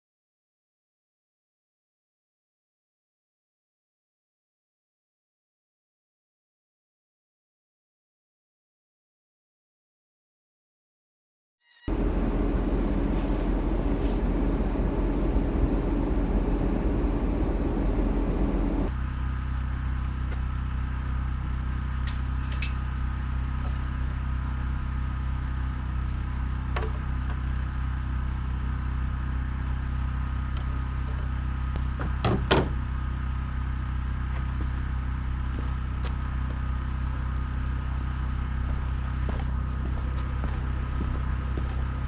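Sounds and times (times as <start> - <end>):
machine humming: 11.9 - 18.9.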